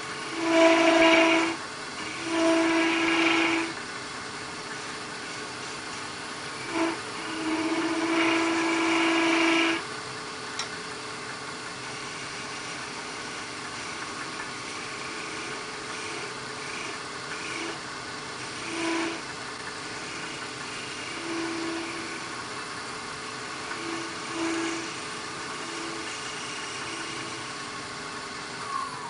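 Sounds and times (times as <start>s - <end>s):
scraper squealing on wood: 0.0s - 3.8s, 4.8s - 9.9s, 11.8s - 27.7s
wood lathe running: 0.0s - 28.7s.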